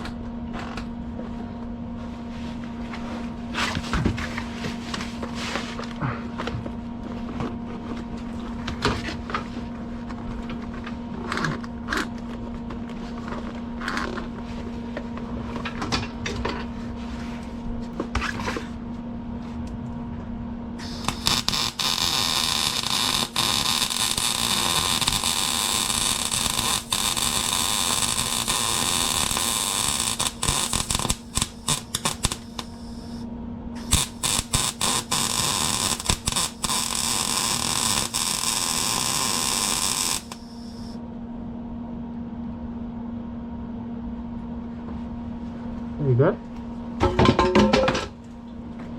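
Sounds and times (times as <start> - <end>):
low steady hum: 0.0 - 48.9
welding arc hissing: 20.8 - 33.2, 33.8 - 41.0.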